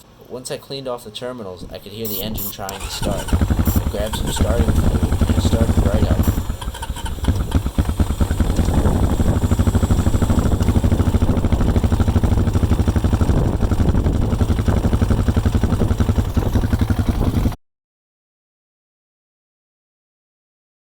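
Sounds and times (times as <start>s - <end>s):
engine idling: 2.1s - 17.6s.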